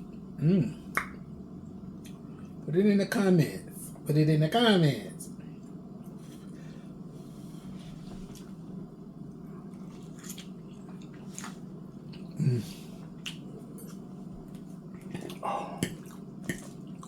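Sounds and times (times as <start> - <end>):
steady low hum: 0.0 - 17.0
person chewing with wet smacks: 0.9 - 2.6, 8.1 - 8.6, 9.6 - 17.0
person humming: 12.4 - 12.8.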